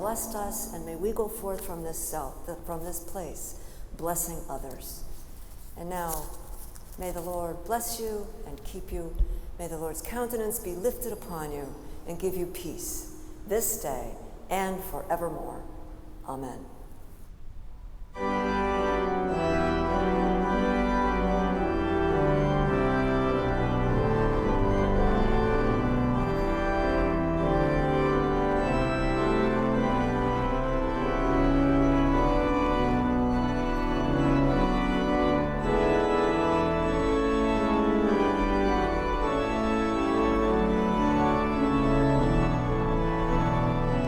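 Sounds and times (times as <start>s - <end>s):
organ playing sustained chords: 18.2s - 44.0s.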